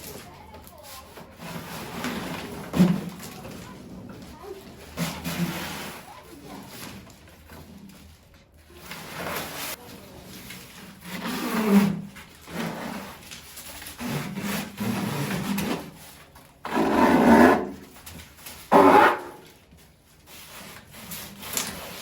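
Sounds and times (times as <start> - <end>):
rubbing strokes: 11.0 - 19.6.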